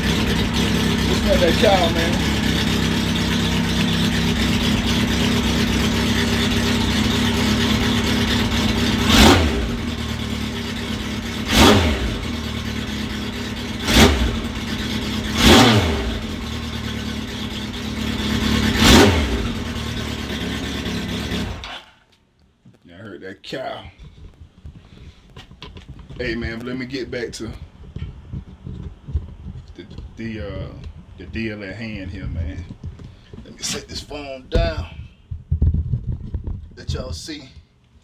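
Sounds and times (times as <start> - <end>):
engine idling and revving: 0.0 - 21.9.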